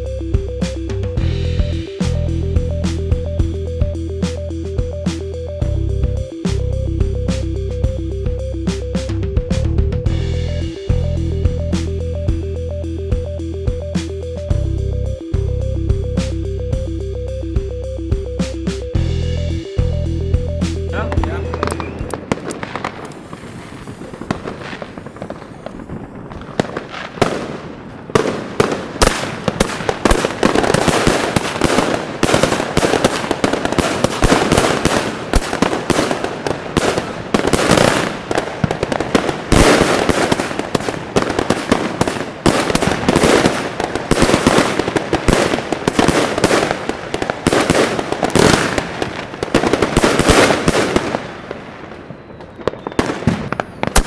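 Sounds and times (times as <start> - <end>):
fireworks barrage cracks and bangs: 21.0 - 54.0.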